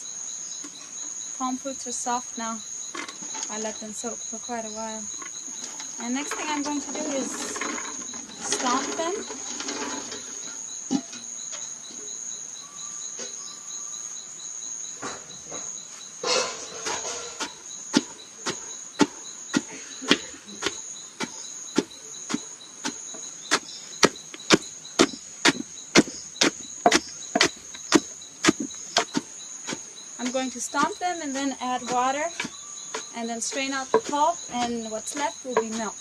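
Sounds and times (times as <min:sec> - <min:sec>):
insects trilling: 0:00.0 - 0:36.0
dull knocks of stomping fruit: 0:15.0 - 0:36.0.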